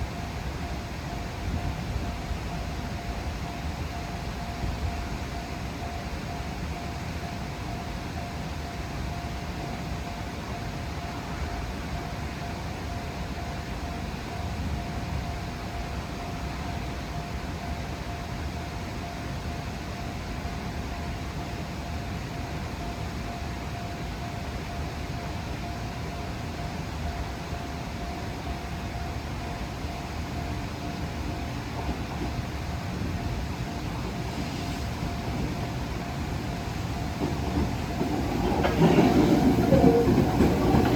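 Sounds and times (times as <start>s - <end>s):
steady rumble and hiss: 0.0s - 38.7s
level crossing alarm ringing: 20.9s - 40.9s.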